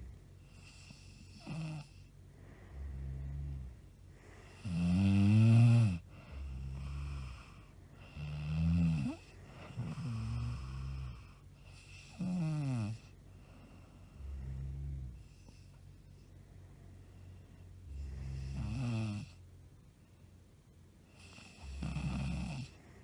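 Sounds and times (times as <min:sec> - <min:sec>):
woman snoring: 0:00.5 - 0:02.0, 0:02.7 - 0:13.2, 0:17.9 - 0:19.4, 0:21.1 - 0:22.8.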